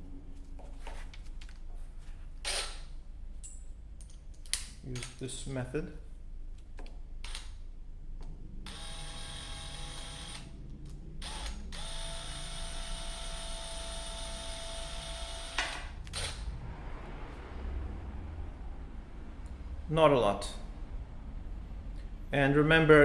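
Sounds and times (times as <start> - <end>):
small electric motor whining: 8.6 - 16.6.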